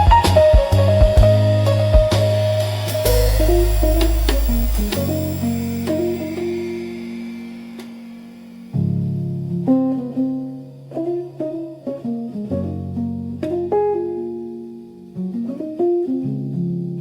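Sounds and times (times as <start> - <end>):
low bass notes: 0.0 - 7.4
guitar plucking slow melody: 0.0 - 17.0.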